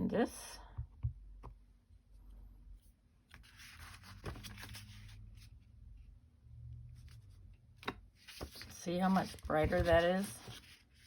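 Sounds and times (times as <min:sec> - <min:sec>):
paper rustling: 0:03.3 - 0:05.2, 0:08.2 - 0:11.0.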